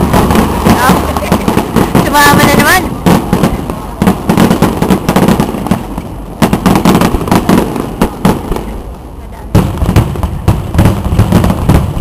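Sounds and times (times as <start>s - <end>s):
fireworks bangs and crackling: 0.0s - 12.0s.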